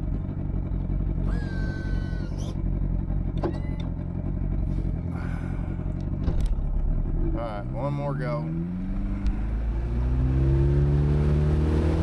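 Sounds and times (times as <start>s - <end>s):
boat engine idling: 0.0s - 8.4s.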